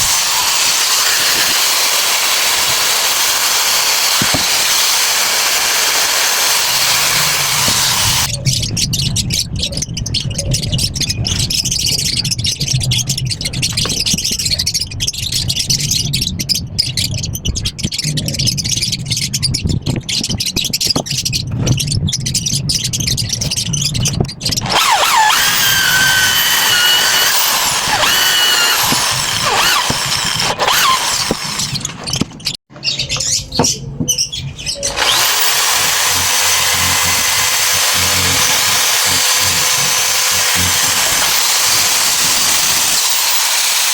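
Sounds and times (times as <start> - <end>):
handheld power tool running: 0.0 - 8.3, 24.6 - 32.2, 34.9 - 43.9.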